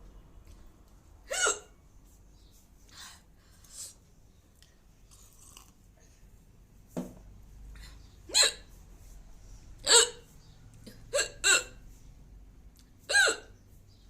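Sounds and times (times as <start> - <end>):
woman hiccuping: 1.3 - 1.7, 8.3 - 8.6, 9.8 - 10.2, 10.9 - 11.8, 13.1 - 13.5.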